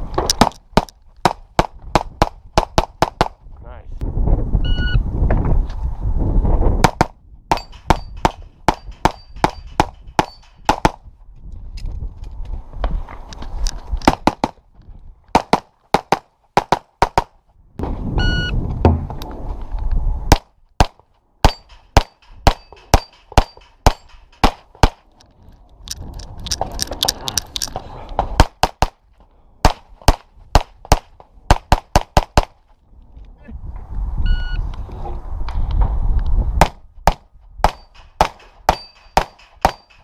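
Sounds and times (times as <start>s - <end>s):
wind rumble on microphone: 1.2s - 15.4s, 17.4s - 20.4s, 24.3s - 28.5s, 32.7s - 38.3s
short ringing tone: 18.2s - 18.6s
handgun shots: 36.6s - 40.0s.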